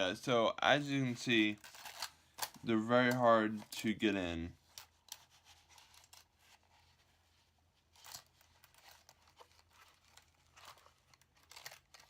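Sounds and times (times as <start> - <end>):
handcuffs rustling and scraping: 1.6 - 3.7, 4.6 - 12.0.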